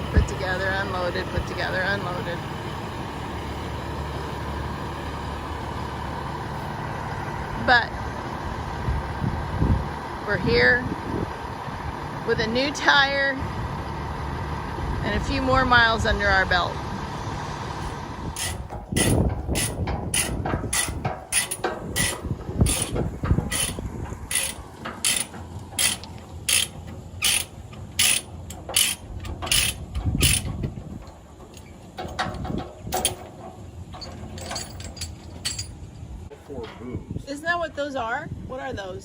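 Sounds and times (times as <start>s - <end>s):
ratchet load binder clicking: 18.4s - 35.8s.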